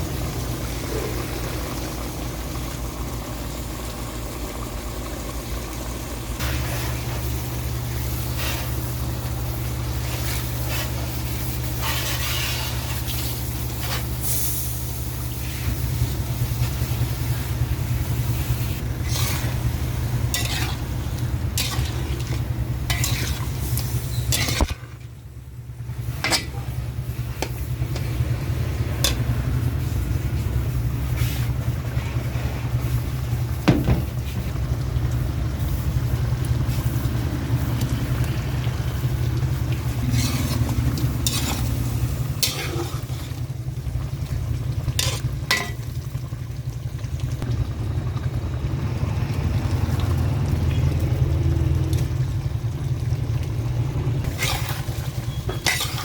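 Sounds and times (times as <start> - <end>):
chicken frying in a pan: 0.0 - 56.0
steady low hum: 0.0 - 56.0
utensil clinking and scraping pan: 20.3 - 20.8, 21.6 - 23.5, 24.1 - 24.9, 40.0 - 41.8, 42.4 - 43.4, 45.0 - 45.9, 54.3 - 56.0.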